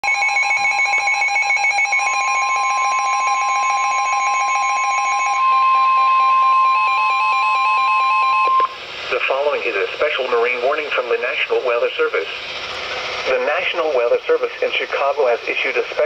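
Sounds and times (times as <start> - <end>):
steady warning alarm tone: 0.0 - 8.8.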